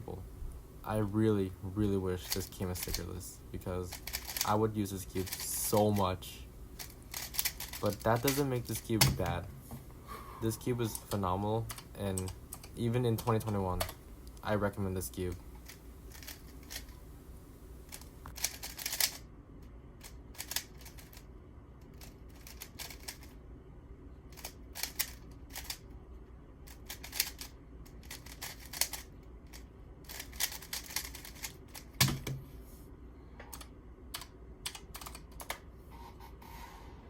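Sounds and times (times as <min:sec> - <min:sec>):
puzzle cube clicking turns: 0:02.2 - 0:03.1, 0:03.9 - 0:04.6, 0:05.2 - 0:06.1, 0:06.8 - 0:09.4, 0:15.6 - 0:17.0, 0:17.9 - 0:19.2, 0:20.0 - 0:21.2, 0:21.9 - 0:23.3, 0:24.3 - 0:25.8, 0:26.7 - 0:32.4.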